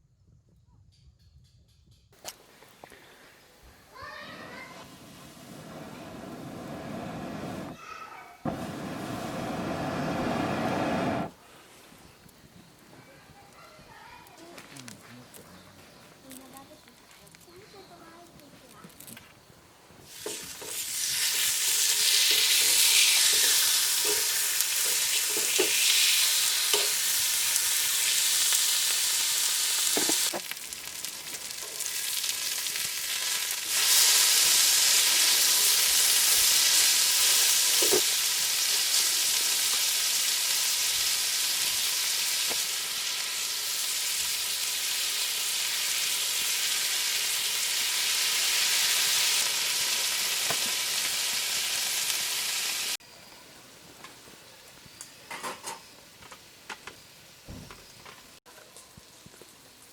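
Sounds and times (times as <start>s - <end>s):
food sizzling in a hot pan: 20.0s - 53.0s.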